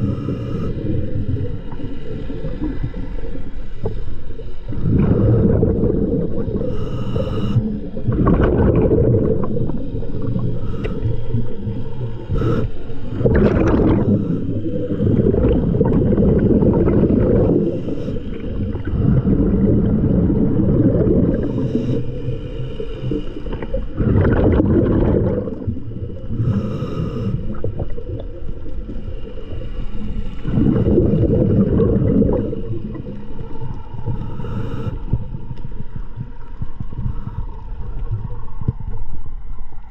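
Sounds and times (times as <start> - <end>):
hissy regulator inhalations: 0.0 - 1.0, 6.5 - 7.8, 10.2 - 13.2, 17.6 - 19.3, 26.2 - 27.6, 33.6 - 35.4
bubbly exhaled air underwater: 0.0 - 39.9.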